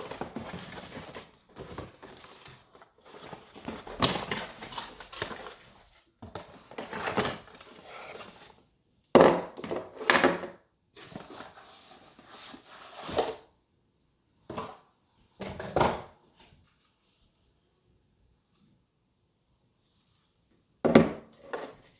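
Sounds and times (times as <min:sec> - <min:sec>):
packaging rustling: 0:00.0 - 0:08.5.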